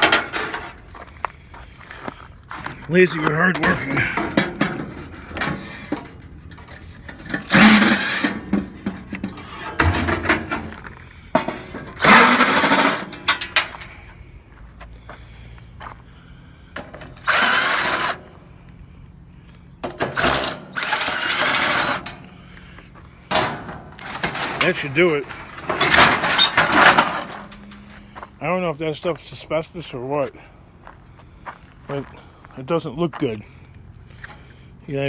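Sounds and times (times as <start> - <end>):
clattering: 0.0 - 0.8, 3.5 - 13.9, 16.8 - 18.3, 19.8 - 22.3, 23.3 - 28.4
power tool on metal: 7.4 - 8.4, 12.0 - 13.2, 17.2 - 18.3, 20.0 - 22.2.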